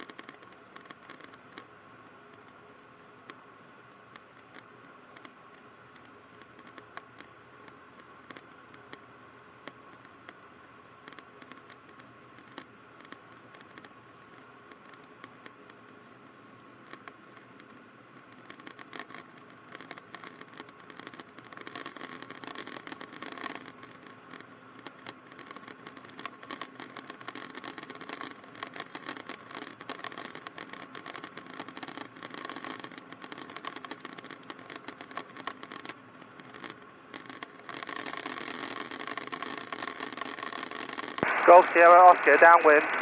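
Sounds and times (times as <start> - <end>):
crackling clicks: 16.9 - 43.0.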